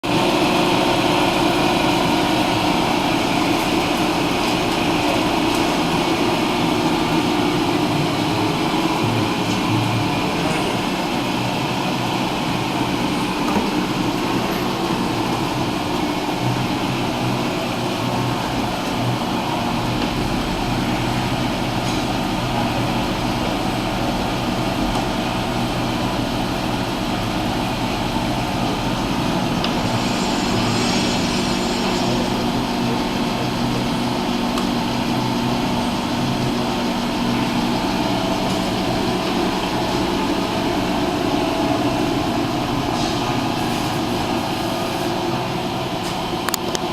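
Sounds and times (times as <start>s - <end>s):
deeper low hum: 22.2s - 34.5s
faint high whine: 27.8s - 34.4s.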